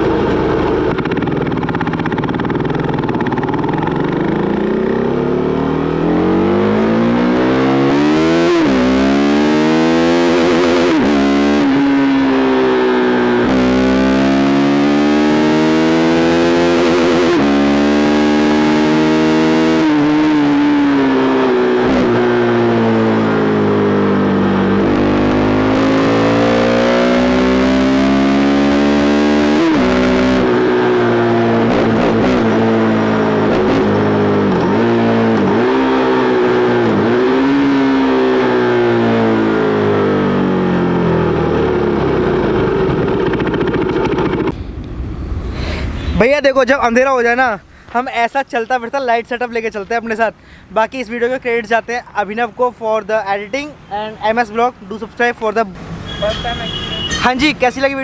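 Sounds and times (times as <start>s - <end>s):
motorcycle engine revving through gears: 0.0s - 46.2s.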